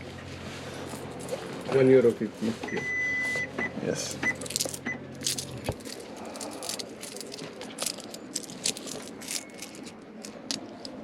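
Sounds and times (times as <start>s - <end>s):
coins clinking: 4.1s - 11.0s.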